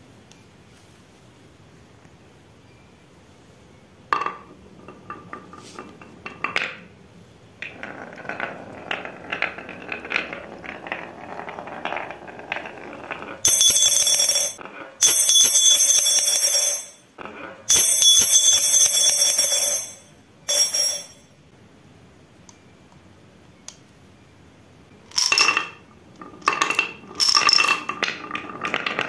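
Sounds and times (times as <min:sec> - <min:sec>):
marbles rattling down a track: 0:07.6 - 0:14.6, 0:25.2 - 0:29.0
bright bell-like ringing: 0:17.7 - 0:21.3.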